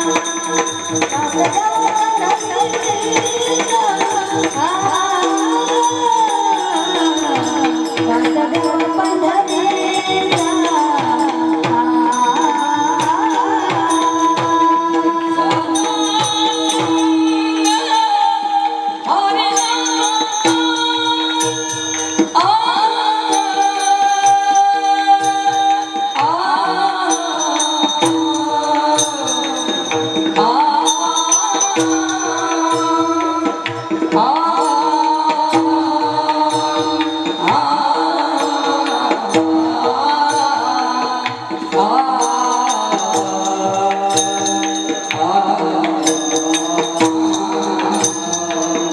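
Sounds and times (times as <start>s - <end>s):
jingling hand percussion: 0.0s - 48.9s
person singing: 0.0s - 48.9s.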